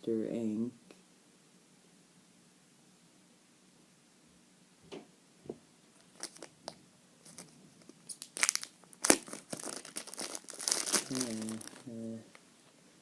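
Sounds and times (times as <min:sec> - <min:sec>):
plastic packaging crinkling: 0:06.0 - 0:12.0.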